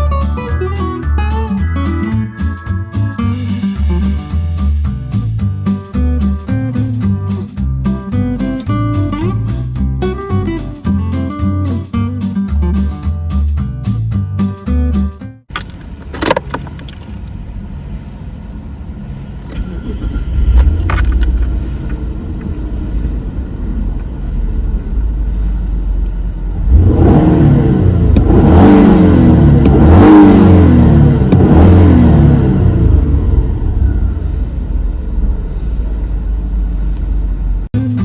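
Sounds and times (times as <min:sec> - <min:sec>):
clicks: 0:15.5 - 0:17.3
car engine running: 0:15.5 - 0:37.7.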